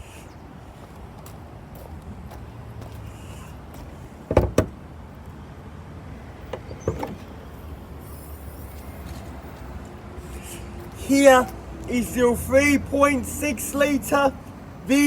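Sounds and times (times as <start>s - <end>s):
car door clunks: 4.3s - 4.8s, 6.5s - 7.3s.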